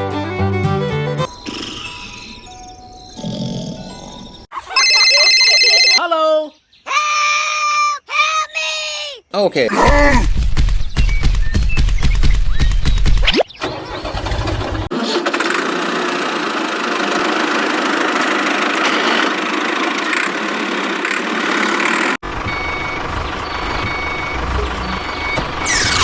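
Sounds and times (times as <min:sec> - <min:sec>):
vehicle engine running: 0:13.8 - 0:26.0.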